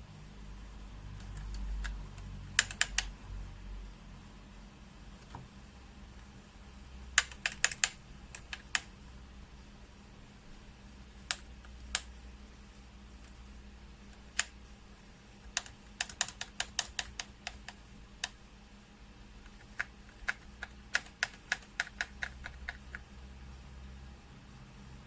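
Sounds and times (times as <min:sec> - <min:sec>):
keyboard keys clicking: 0:01.2 - 0:03.1, 0:07.2 - 0:08.9, 0:15.5 - 0:18.4, 0:19.4 - 0:23.1.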